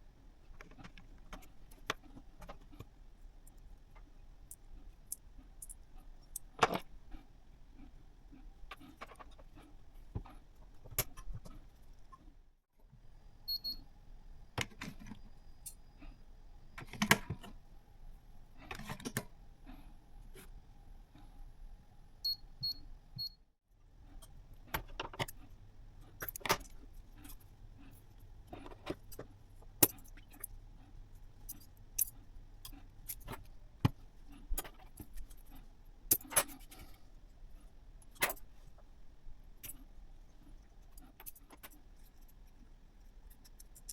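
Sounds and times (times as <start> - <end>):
small parts and tools clinking: 3.4 - 7.0, 24.2 - 30.6, 31.3 - 37.0, 39.6 - 43.9.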